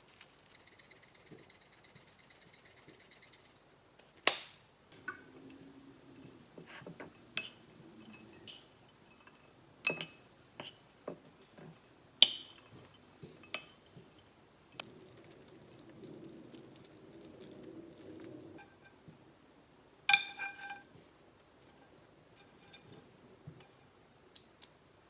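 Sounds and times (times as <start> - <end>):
utensils clinking against dishes: 4.9 - 14.9.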